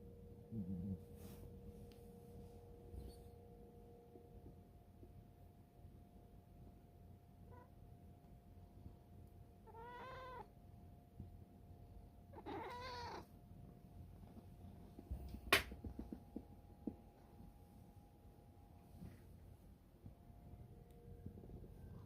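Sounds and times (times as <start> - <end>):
cat chirp: 9.6 - 10.5, 12.3 - 13.3
cat meowing: 9.6 - 10.5, 12.3 - 13.3.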